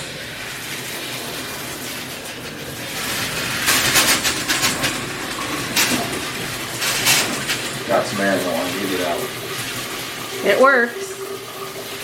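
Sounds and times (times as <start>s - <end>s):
water rushing and sputtering through pipes: 0.0s - 12.0s.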